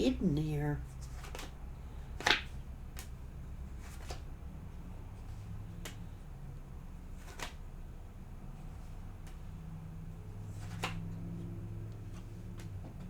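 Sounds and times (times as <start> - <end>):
cards clicking: 1.0 - 1.6, 2.2 - 3.2, 7.2 - 7.6, 10.6 - 11.0.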